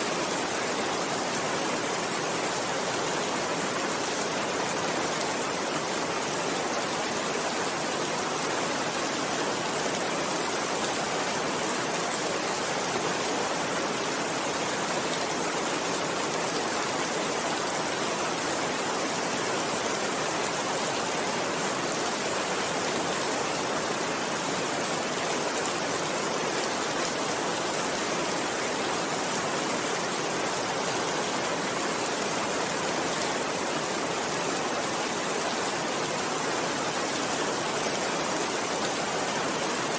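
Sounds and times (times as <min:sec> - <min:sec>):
steady rainfall: 0:00.0 - 0:39.9.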